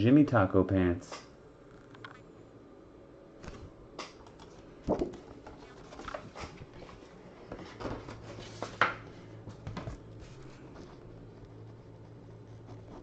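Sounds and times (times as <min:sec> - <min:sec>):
items rustling on a table: 0:04.4 - 0:11.4.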